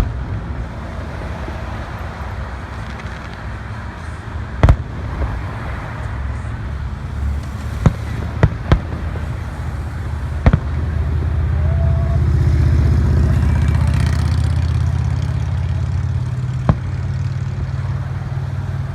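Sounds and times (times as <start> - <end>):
fireworks bangs: 0.0 - 0.2, 4.6 - 5.5, 7.4 - 17.9.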